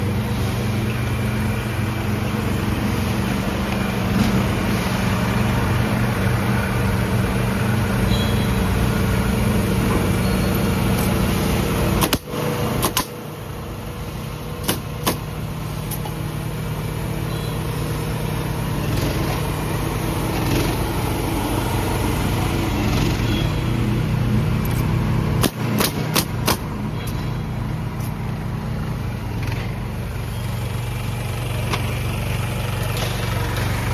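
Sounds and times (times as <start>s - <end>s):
excavator engine running: 0.0s - 33.9s
sharp clicks: 12.0s - 13.2s, 24.6s - 27.2s.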